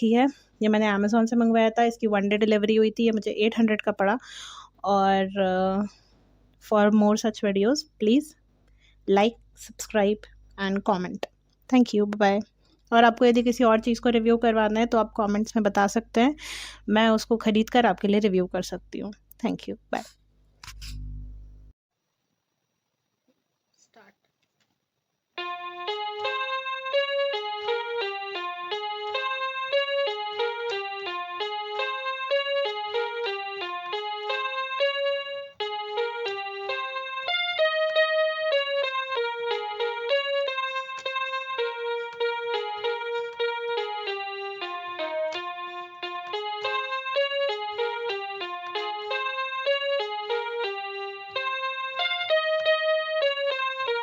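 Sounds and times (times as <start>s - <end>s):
electronic keyboard piano melody: 25.4s - 54.0s.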